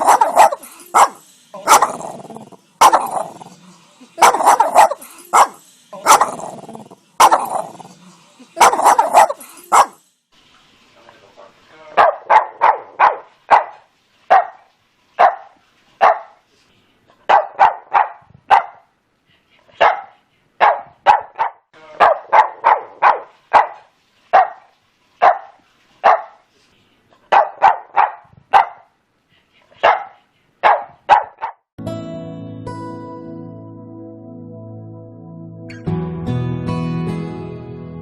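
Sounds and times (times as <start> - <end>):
dog barking: 0.0 - 3.5, 4.2 - 6.6, 7.2 - 7.8, 8.6 - 10.0, 11.8 - 16.4, 17.2 - 18.9, 19.8 - 26.4, 27.3 - 29.0, 29.8 - 31.6.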